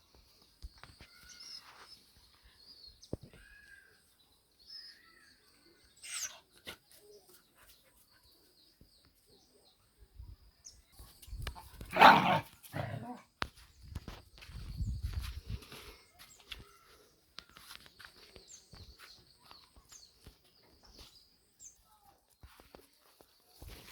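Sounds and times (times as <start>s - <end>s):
dog barking: 11.9s - 12.4s.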